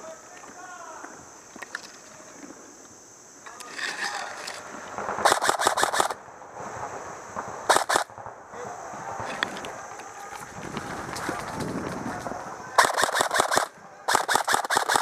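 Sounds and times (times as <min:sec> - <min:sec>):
airsoft rifle shots: 0:05.0 - 0:06.2, 0:07.4 - 0:08.3, 0:12.7 - 0:15.0.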